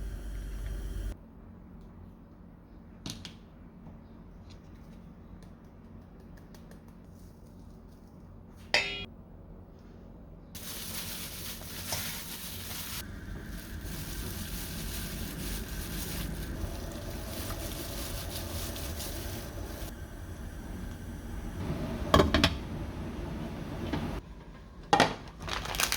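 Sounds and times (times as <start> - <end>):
sharp metallic clink: 8.8 - 9.1.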